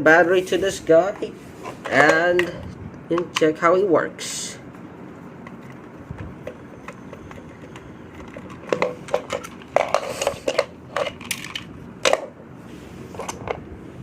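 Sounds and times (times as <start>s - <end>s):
plastic toy clicks and clatters: 6.4s - 12.3s.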